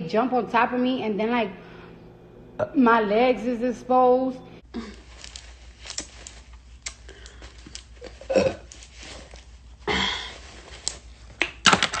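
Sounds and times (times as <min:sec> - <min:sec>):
woman burping: 0:08.2 - 0:08.7.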